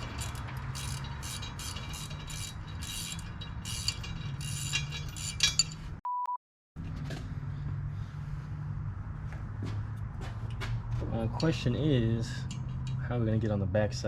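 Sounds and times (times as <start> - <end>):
ratchet wrench clicking: 0.0 - 5.8, 12.4 - 13.0
short high beep: 6.0 - 6.4.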